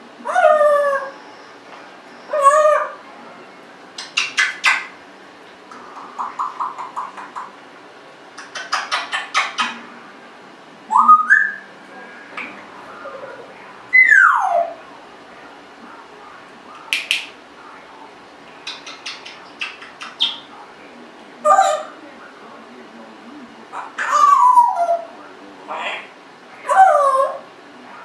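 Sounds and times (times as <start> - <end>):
parrot whistling: 0.2 - 1.6, 2.2 - 3.0, 10.9 - 11.7, 13.2 - 14.8, 18.7 - 20.5, 23.7 - 25.1
parrot clicking: 4.0 - 4.9, 5.7 - 7.6, 8.4 - 9.8, 16.9 - 17.4, 18.5 - 20.5.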